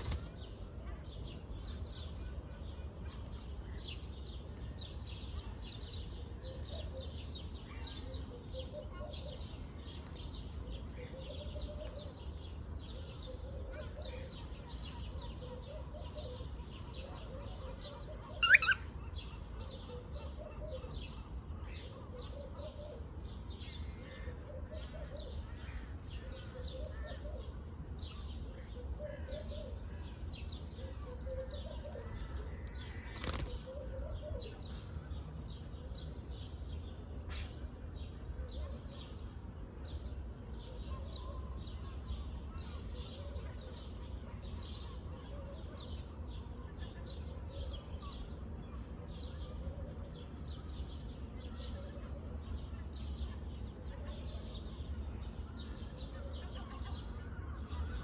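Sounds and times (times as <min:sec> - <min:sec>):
parrot chirping: 0:18.4 - 0:18.8.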